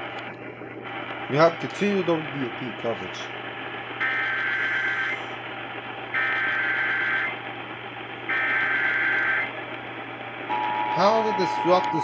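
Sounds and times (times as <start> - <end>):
hissy radio broadcast: 0.8 - 5.5, 10.5 - 12.0
shrill digital data warble: 10.5 - 12.0.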